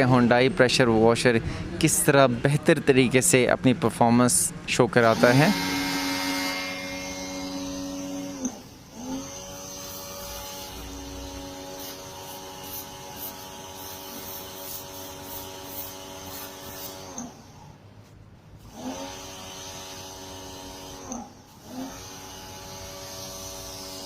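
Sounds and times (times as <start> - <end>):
pressure washer motor humming: 5.0 - 17.7, 18.6 - 24.0.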